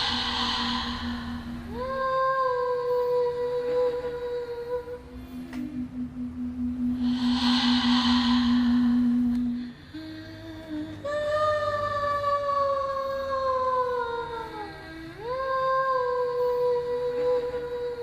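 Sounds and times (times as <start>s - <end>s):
breathy whoosh: 0.0s - 3.1s, 6.7s - 11.0s
falling wailing tone: 0.0s - 4.0s, 5.5s - 10.5s
low drone: 0.0s - 18.0s.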